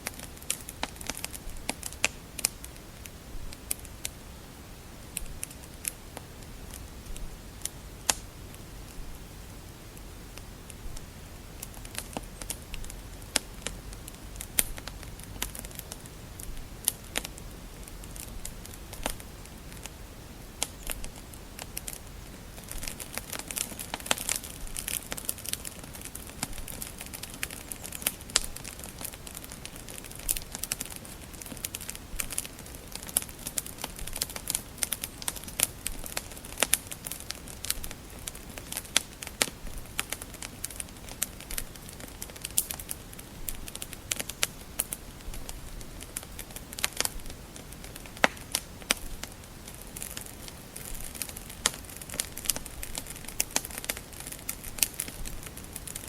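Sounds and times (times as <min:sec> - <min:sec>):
wood fire crackling: 0:00.0 - 0:56.0
low steady rumble: 0:00.6 - 0:27.0.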